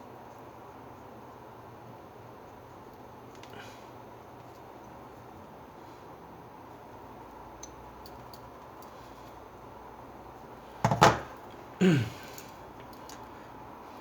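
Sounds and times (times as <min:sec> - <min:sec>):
faint steady hum: 0:00.0 - 0:14.0.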